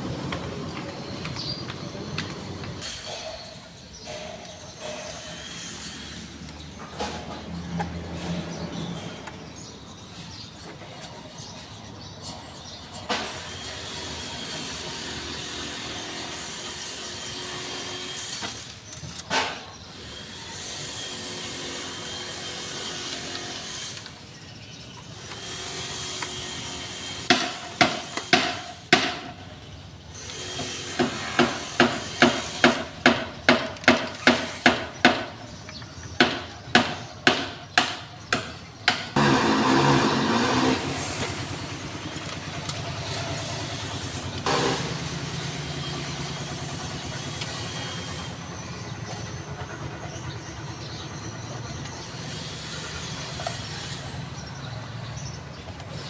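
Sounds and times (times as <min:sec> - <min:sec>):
tool scraping: 0:01.0 - 0:11.7, 0:12.4 - 0:49.2, 0:52.0 - 0:54.6
hammering strikes: 0:02.1 - 0:08.4, 0:25.2 - 0:29.5, 0:30.4 - 0:41.6.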